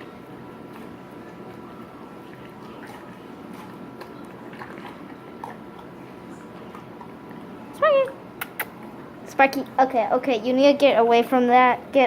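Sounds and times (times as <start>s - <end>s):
dog chewing watermelon: 0.0s - 7.6s.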